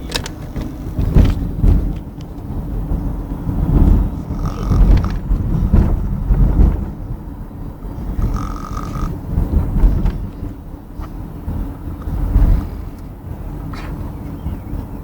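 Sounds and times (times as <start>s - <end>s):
man snoring loudly: 4.3s - 5.2s, 8.2s - 9.2s.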